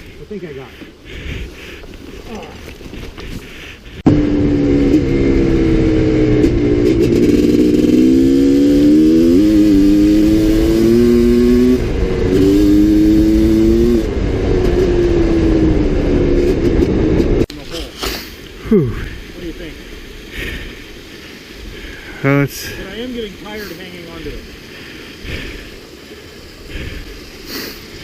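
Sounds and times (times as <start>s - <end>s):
dirt bike engine revving: 4.0s - 17.5s.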